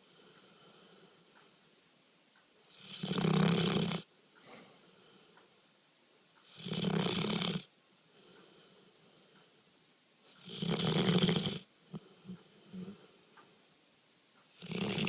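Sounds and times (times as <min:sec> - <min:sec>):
dog snoring: 0:02.7 - 0:05.4, 0:06.4 - 0:08.8, 0:10.3 - 0:13.6, 0:14.5 - 0:15.0.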